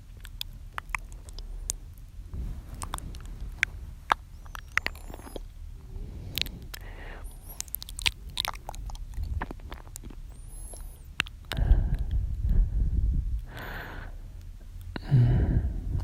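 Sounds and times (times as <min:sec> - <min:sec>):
wet mouth clicks and smacks: 0:00.0 - 0:05.6, 0:06.2 - 0:12.2
breath: 0:05.9 - 0:07.6, 0:10.4 - 0:14.4, 0:15.0 - 0:16.0.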